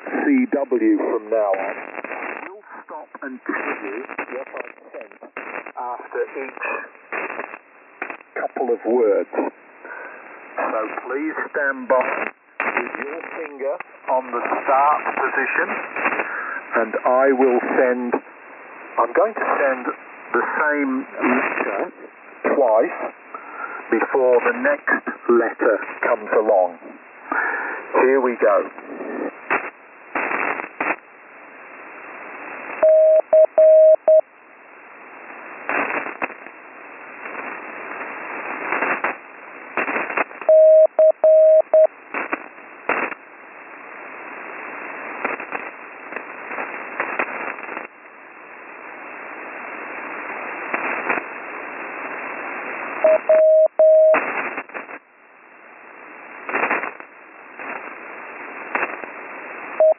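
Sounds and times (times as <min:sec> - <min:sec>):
radio static crashes and hiss: 0:00.0 - 0:59.9
morse code tone: 0:32.8 - 0:34.2, 0:40.5 - 0:41.9, 0:53.1 - 0:54.2.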